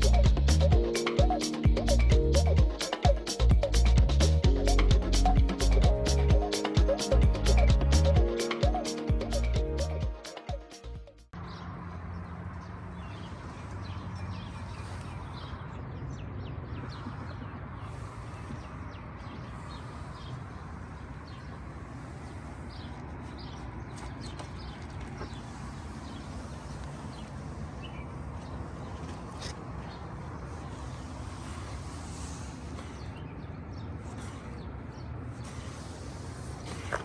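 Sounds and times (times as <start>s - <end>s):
steady low rumble: 0.0s - 0.9s, 1.7s - 6.5s, 7.1s - 8.3s.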